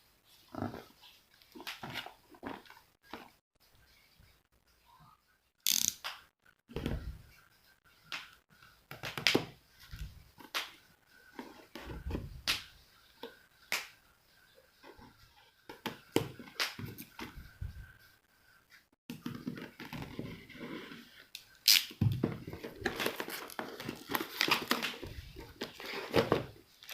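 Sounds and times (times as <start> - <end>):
objects being handled: 0.8 - 3.4, 19.1 - 26.9.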